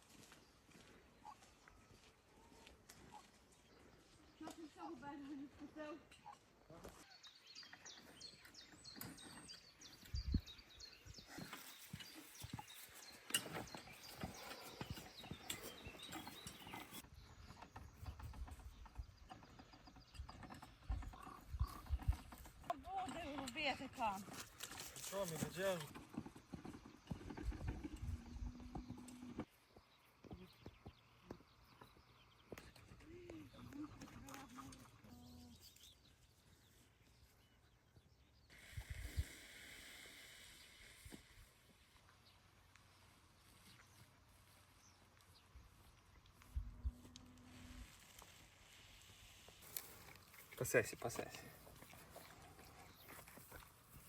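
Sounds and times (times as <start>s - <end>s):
horse hooves clopping: 11.1s - 35.9s.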